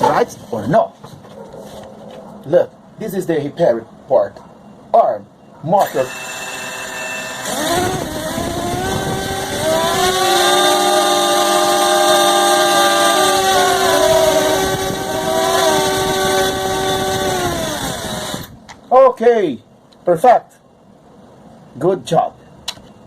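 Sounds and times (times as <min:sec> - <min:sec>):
drone motors whining: 0:05.8 - 0:18.6.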